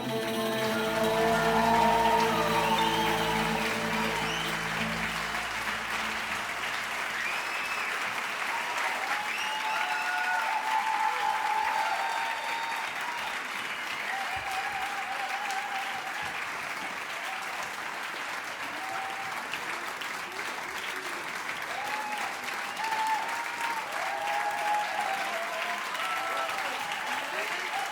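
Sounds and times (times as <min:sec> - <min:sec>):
ensemble holding a note: 0:00.0 - 0:07.2
audience applauding: 0:00.0 - 0:27.9.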